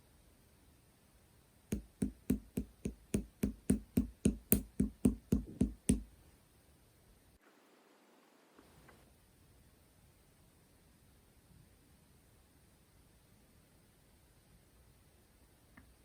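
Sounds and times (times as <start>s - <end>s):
quick even taps: 1.7s - 6.1s.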